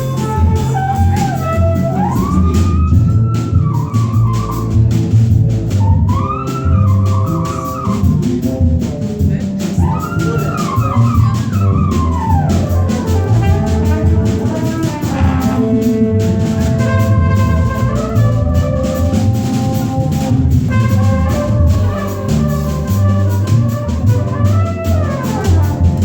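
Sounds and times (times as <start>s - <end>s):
bass line: 0.0s - 26.0s
drums and cymbals: 0.0s - 26.0s
jazz band playing live: 0.0s - 26.0s
sliding lead melody: 0.0s - 26.0s.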